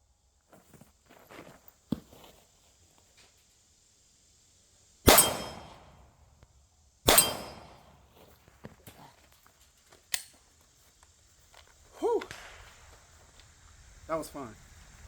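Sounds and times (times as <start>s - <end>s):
pistol shots echoing: 5.1s - 6.0s, 7.1s - 8.0s
faint sharp crack: 12.1s - 13.5s.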